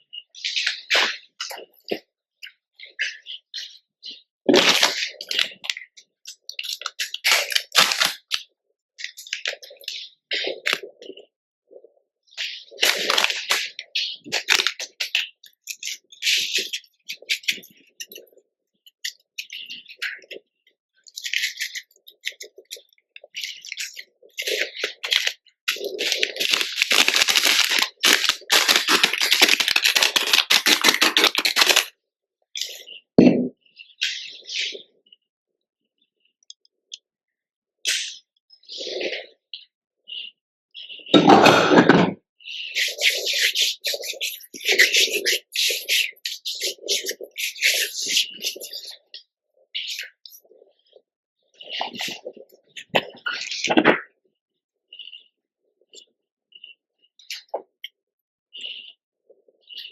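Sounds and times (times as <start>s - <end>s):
chalk being crushed: 24.4s - 31.9s, 42.8s - 49.0s.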